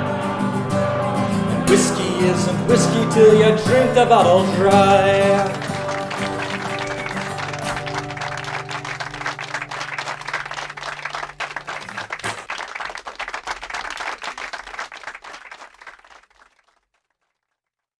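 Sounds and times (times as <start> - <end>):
audience applauding: 0.0 - 16.9
band playing final chord: 4.0 - 10.8.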